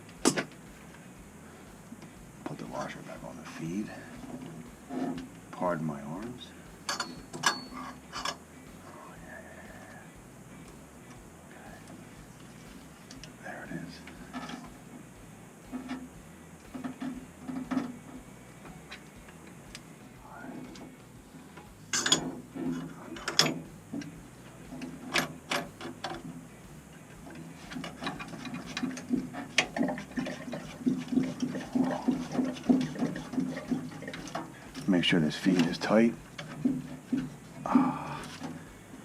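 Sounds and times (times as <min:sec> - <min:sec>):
metal fittings and tools clinking: 0:06.9 - 0:08.4, 0:21.9 - 0:24.1, 0:27.7 - 0:37.3.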